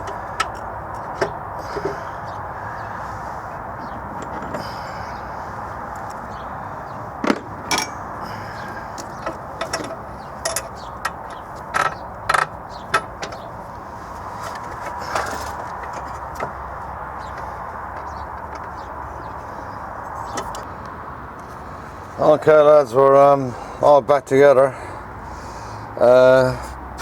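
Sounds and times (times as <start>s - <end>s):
tools and parts knocking and clinking: 0.0s - 2.0s, 4.1s - 4.6s, 7.2s - 8.1s, 9.0s - 13.5s, 14.4s - 16.6s, 17.2s - 18.9s.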